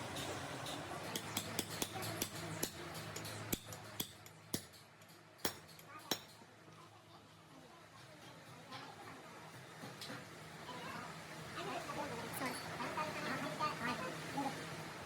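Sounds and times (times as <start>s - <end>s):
metal-on-metal taps and clicks: 0.2s - 6.4s.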